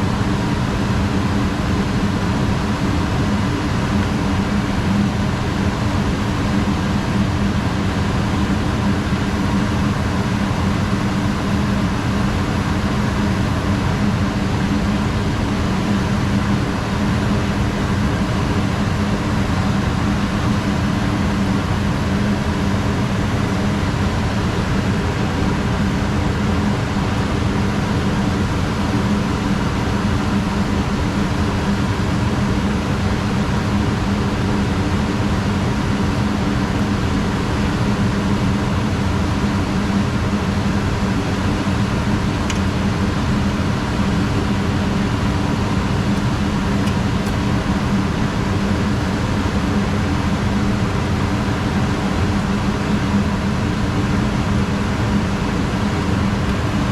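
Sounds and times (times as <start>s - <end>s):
gas furnace blower humming: 0.0s - 56.9s.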